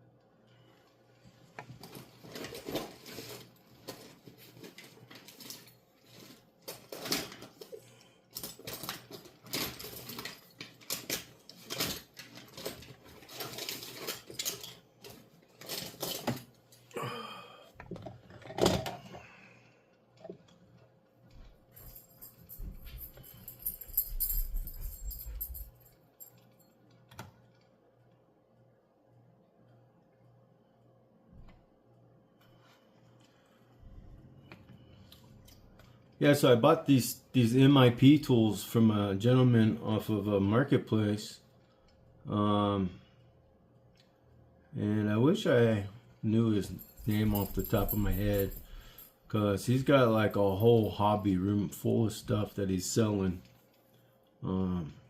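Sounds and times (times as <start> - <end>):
metal tools clinking: 8.4 - 16.9, 21.8 - 26.6, 46.6 - 51.2.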